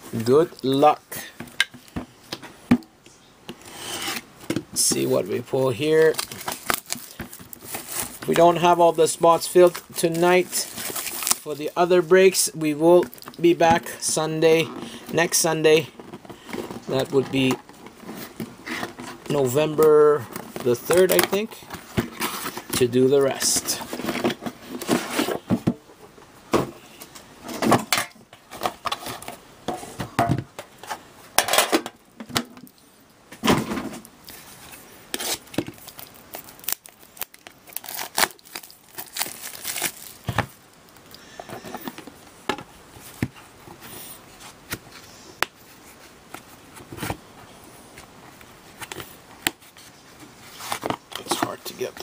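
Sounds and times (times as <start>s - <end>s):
wrapping tearing and crinkling: 6.0s - 8.4s, 9.7s - 11.5s, 35.1s - 41.1s.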